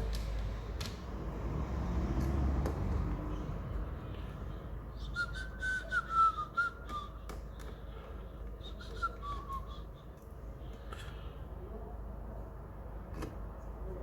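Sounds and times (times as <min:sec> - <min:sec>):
person whistling: 0:05.0 - 0:07.3, 0:08.6 - 0:10.1.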